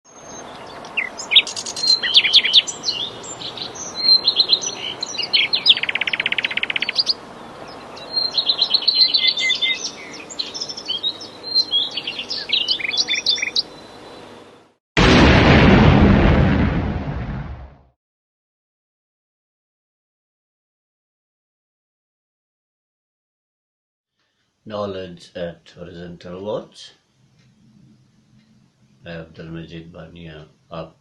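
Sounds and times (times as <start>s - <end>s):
songbirds chirping and trilling: 0.1s - 14.8s
fast pulsed bird trill: 1.0s - 7.2s, 8.0s - 14.0s
faint steady hiss: 24.2s - 31.0s.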